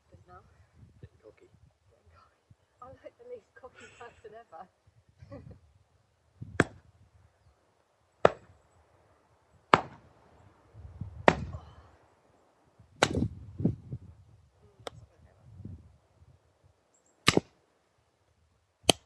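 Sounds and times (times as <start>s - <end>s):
axe striking wood: 6.6s - 6.8s, 8.2s - 8.5s, 9.7s - 10.0s, 11.2s - 11.5s, 13.0s - 13.3s.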